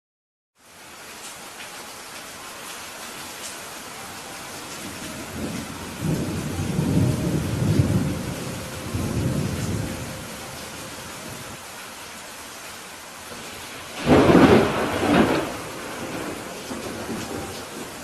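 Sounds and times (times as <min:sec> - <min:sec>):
steady rain: 0:00.6 - 0:18.0
rolling thunder: 0:04.8 - 0:11.6, 0:13.4 - 0:18.0.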